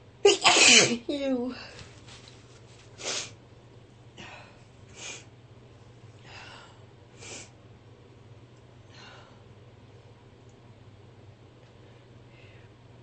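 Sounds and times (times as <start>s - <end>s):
woman sneezing: 0.3s - 1.1s
woman breathing hard and sniffing: 4.2s - 5.3s, 6.2s - 7.6s.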